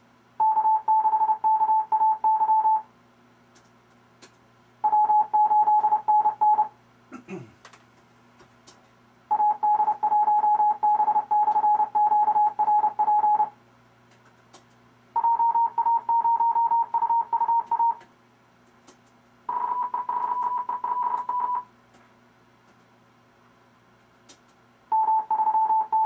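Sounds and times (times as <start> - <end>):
morse code tone beeping: 0.4 - 2.8, 4.8 - 6.7, 9.3 - 13.5, 15.2 - 18.0, 19.5 - 21.6, 24.9 - 26.0.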